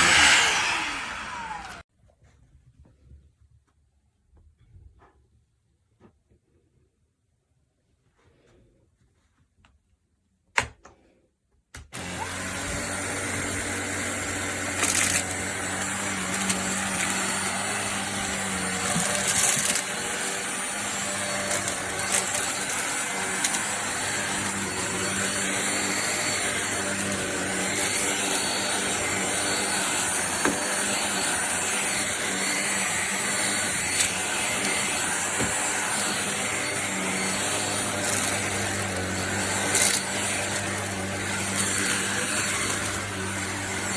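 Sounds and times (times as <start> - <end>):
stick vacuum motor running: 0.0 - 1.8, 11.9 - 43.9.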